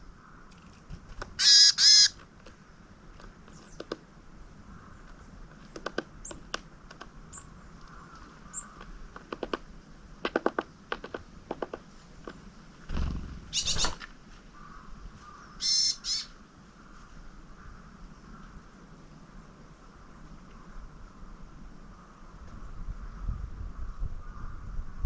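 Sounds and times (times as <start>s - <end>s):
songbirds chirping: 0.0s - 25.0s
harsh buzzy bird call: 1.4s - 2.2s, 13.4s - 14.0s, 15.6s - 16.4s
sharp bird taps: 3.2s - 4.0s, 5.0s - 7.1s, 7.9s - 12.4s.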